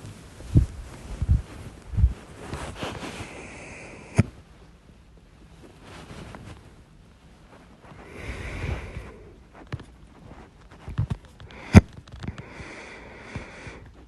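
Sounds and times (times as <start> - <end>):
breathing close to microphone: 0.2 - 4.4, 7.8 - 14.0.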